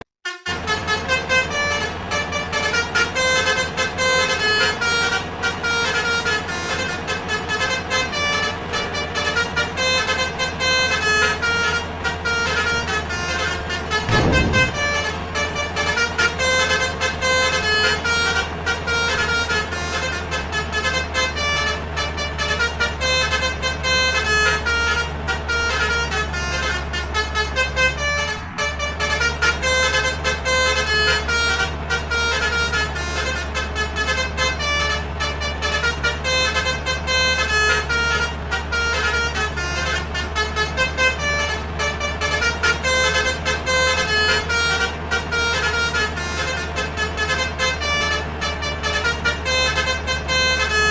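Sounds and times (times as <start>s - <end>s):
bus trumpet horn melody: 0.0s - 50.9s
engine idling hum: 0.0s - 50.9s
brief low thump: 13.8s - 17.6s.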